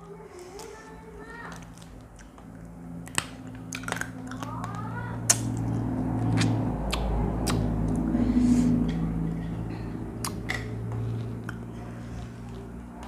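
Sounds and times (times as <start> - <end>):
chewing: 0.0 - 8.0, 8.9 - 13.0
low steady hum: 0.0 - 13.0.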